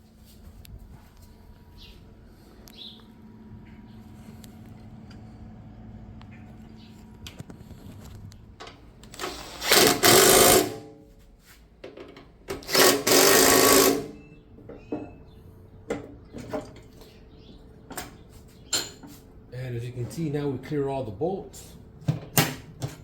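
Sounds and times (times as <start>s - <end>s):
power tool buzzing: 9.1s - 11.0s, 12.6s - 14.3s
scattered clicks and knocks: 11.8s - 13.2s.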